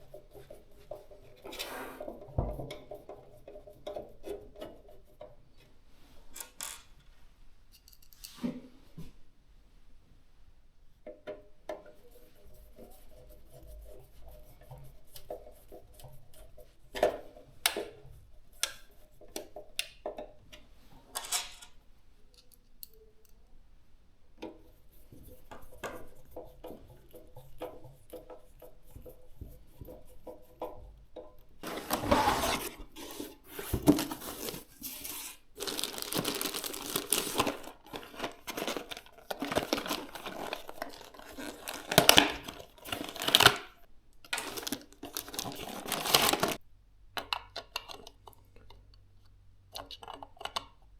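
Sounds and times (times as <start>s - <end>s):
small clicks and taps of parts: 7.7s - 8.3s, 18.6s - 20.7s, 22.3s - 23.5s
plastic packaging crinkling and tearing: 33.8s - 46.6s.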